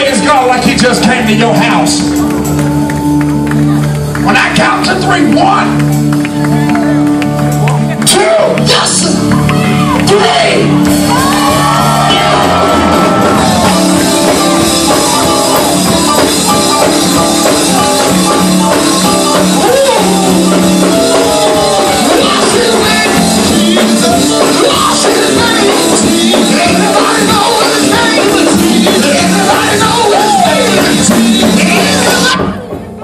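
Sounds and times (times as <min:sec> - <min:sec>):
live church band music: 0:00.0 - 0:33.0
people singing and shouting: 0:08.1 - 0:33.0.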